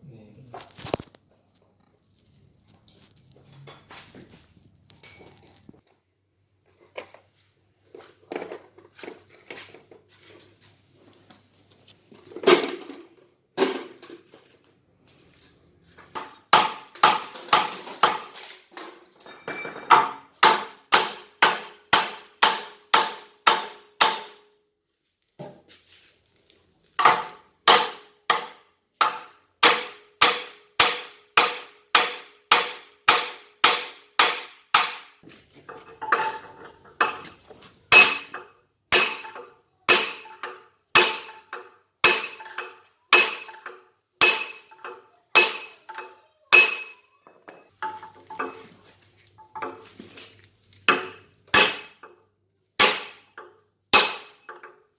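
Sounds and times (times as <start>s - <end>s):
hammer striking metal: 19.5s - 24.5s, 27.0s - 35.2s, 36.0s - 47.6s, 50.9s - 52.1s, 52.8s - 53.3s, 54.0s - 54.6s.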